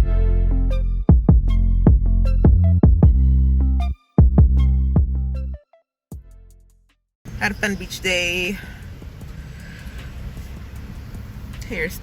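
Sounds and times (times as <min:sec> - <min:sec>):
electronic music with heavy bass: 0:00.0 - 0:05.6.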